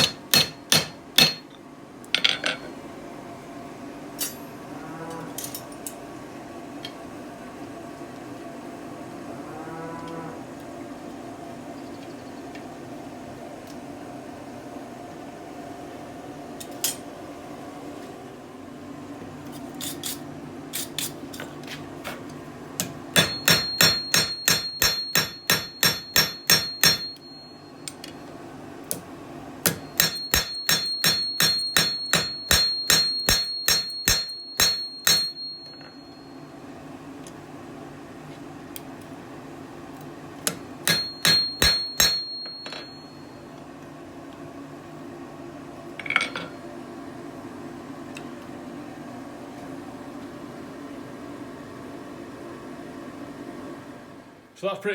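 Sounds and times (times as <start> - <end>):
hammer striking iron on anvil: 0.0 - 1.5, 22.8 - 28.1, 29.6 - 36.1, 40.5 - 43.2
anvil ringing: 23.2 - 28.0, 29.6 - 36.3, 40.8 - 43.3.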